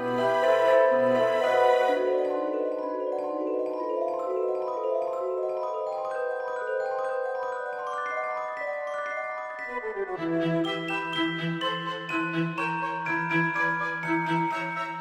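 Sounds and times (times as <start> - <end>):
gentle marimba melody: 0.3 - 9.7.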